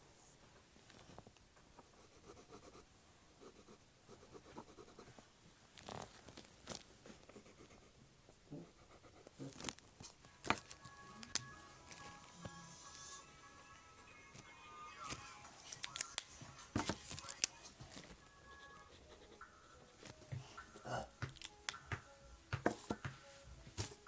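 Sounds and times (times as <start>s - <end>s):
pencil scratching on paper: 1.9s - 5.2s, 7.0s - 10.8s, 15.1s - 20.9s
faint music from a phone: 8.5s - 24.0s.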